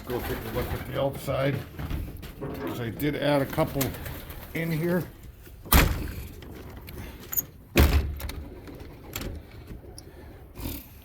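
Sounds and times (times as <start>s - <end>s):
loft door banging: 7.7s - 8.6s.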